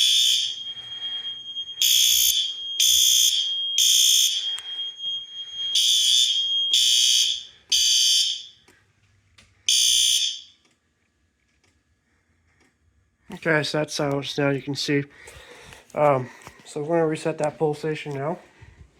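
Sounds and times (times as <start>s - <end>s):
thin steady high tone: 0.0s - 7.6s
fire alarm horn blasts: 0.0s - 8.7s, 9.7s - 10.6s.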